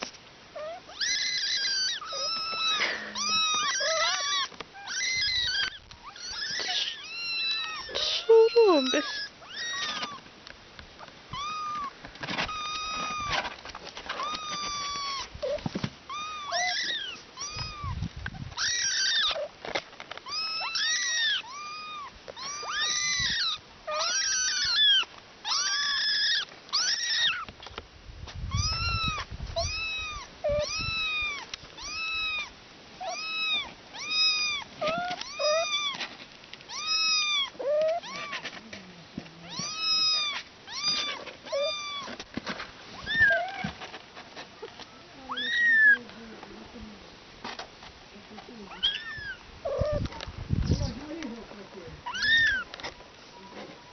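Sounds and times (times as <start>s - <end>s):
cat meowing: 0.6s - 10.2s, 11.0s - 13.4s, 14.2s - 19.5s, 20.2s - 27.5s, 28.5s - 36.0s, 36.7s - 38.6s, 39.4s - 42.2s, 43.0s - 43.8s, 45.2s - 46.0s, 48.7s - 50.2s, 52.0s - 52.7s.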